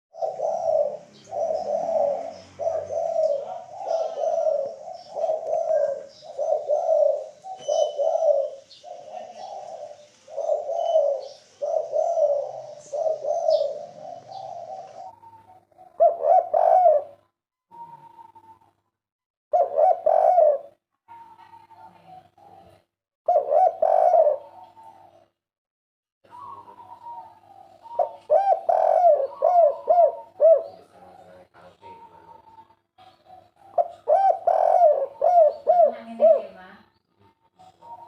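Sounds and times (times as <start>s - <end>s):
small birds chirping: 0.1s - 16.8s, 26.3s - 38.0s
dove cooing: 0.1s - 18.8s, 19.5s - 25.3s, 26.3s - 38.0s.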